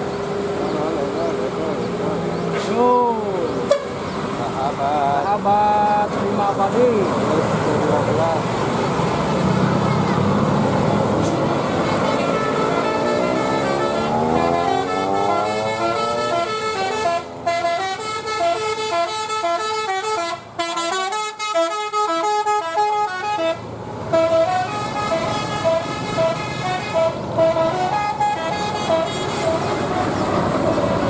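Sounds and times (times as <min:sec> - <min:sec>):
musical bus horn playing a tune: 0:03.7 - 0:04.0, 0:11.2 - 0:31.0.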